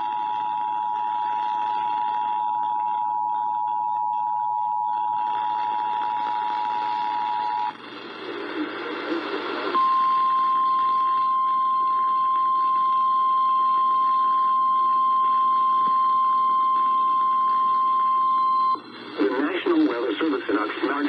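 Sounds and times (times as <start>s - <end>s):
radio static: 5.2s - 12.8s, 16.8s - 21.0s.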